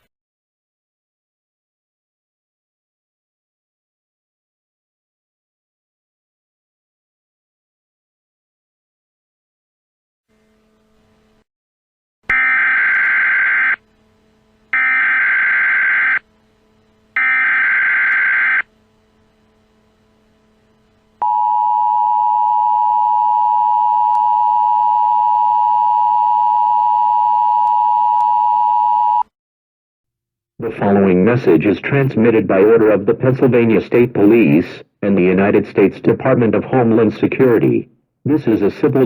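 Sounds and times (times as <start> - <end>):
two-tone attention signal: 21.2 - 29.2.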